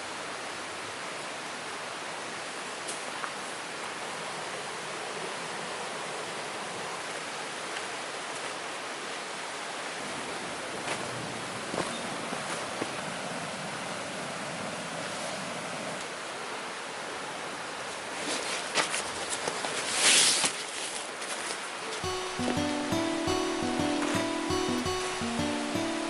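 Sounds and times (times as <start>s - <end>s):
heavy rain: 22.0s - 26.0s.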